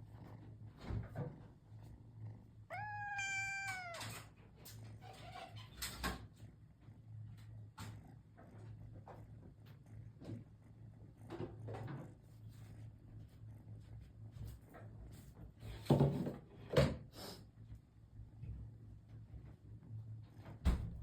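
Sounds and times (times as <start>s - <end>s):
cat meowing: 2.7s - 4.3s.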